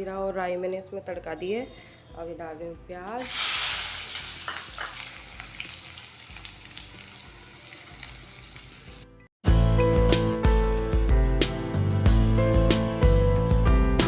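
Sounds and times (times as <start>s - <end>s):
background music: 0.0s - 14.0s
onion sizzling in hot oil: 3.2s - 9.1s.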